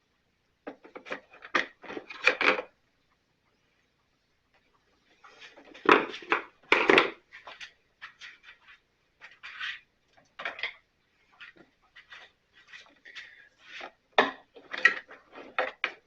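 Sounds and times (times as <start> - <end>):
tools scraping and knocking: 5.2 - 16.0.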